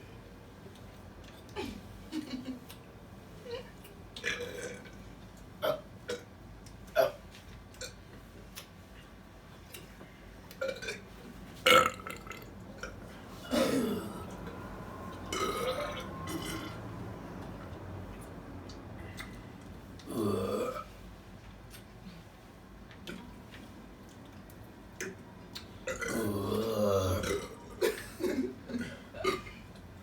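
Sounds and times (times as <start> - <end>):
people burping: 11.7 - 14.4, 20.0 - 20.9, 25.9 - 29.6.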